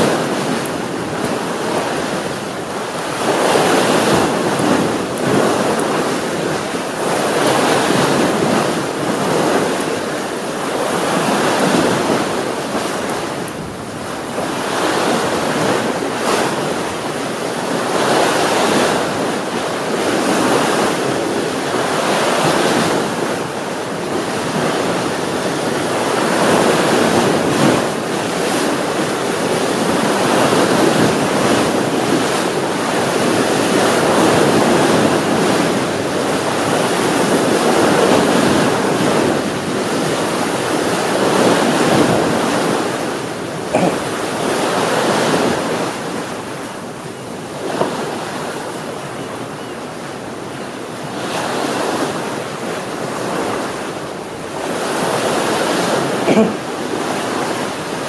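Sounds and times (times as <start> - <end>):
sea waves washing onto shore: 0.0 - 58.0.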